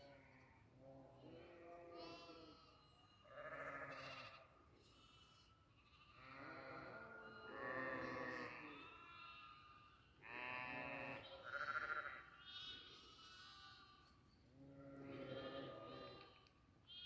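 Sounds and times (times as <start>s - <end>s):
goats bleating: 14.8s - 16.4s.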